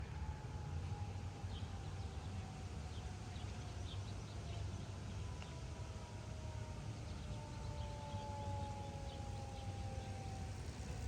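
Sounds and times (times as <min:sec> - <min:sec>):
distant fire engine siren: 0:05.2 - 0:11.0.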